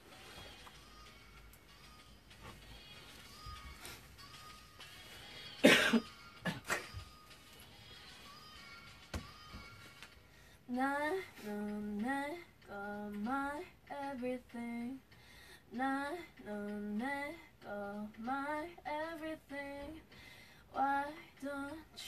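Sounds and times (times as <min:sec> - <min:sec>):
woman singing a cappella: 0:10.6 - 0:22.0.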